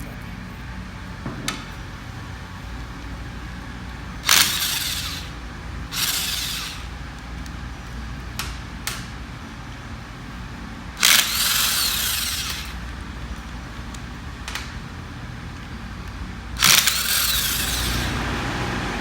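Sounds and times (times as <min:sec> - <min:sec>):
hand-held power tool running: 0:04.1 - 0:07.3, 0:11.0 - 0:13.0, 0:16.6 - 0:18.7.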